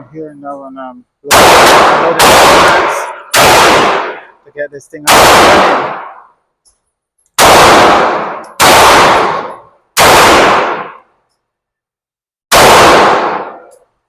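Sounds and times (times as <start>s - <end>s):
handgun shots echoing indoors: 1.3s - 4.3s, 7.4s - 11.2s, 12.5s - 13.9s.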